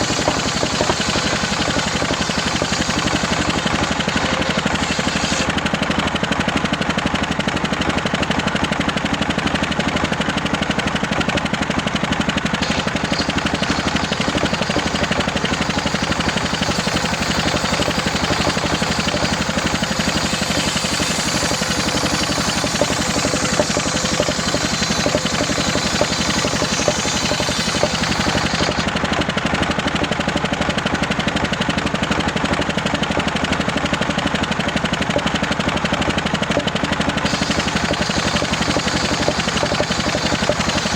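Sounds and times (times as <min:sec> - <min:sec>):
circular saw engine drone: 0:00.0 - 0:06.0, 0:12.5 - 0:30.2, 0:36.2 - 0:40.9
saw blade cutting wood: 0:00.0 - 0:06.1, 0:12.5 - 0:30.2, 0:36.5 - 0:40.9.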